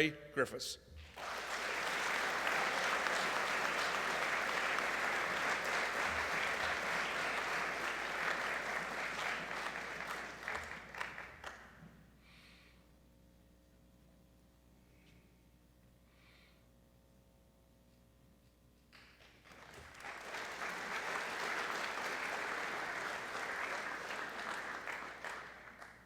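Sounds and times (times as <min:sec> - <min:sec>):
audience applauding: 0:01.1 - 0:11.7, 0:19.2 - 0:26.0.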